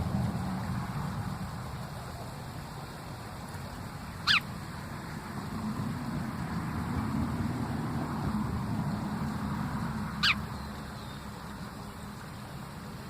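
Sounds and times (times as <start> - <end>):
bird chirp: 4.2 - 4.4, 10.2 - 12.5.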